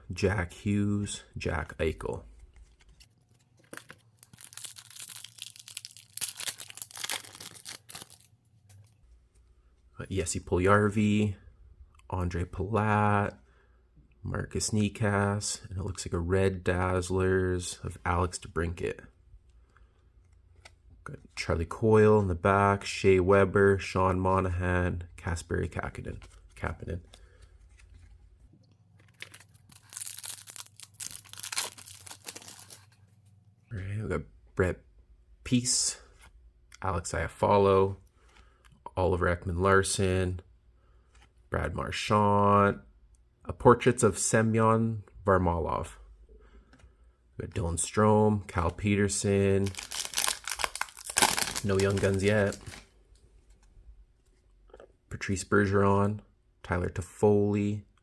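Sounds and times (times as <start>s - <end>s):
plastic wrapper tearing and crinkling: 3.6s - 8.3s, 29.0s - 33.0s, 49.6s - 52.9s.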